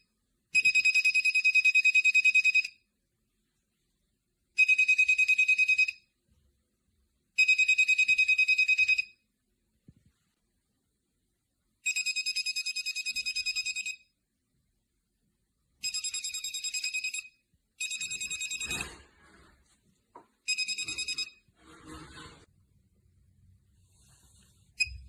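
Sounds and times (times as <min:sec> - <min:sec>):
rapidly pulsing electronic beep: 0:20.5 - 0:21.4.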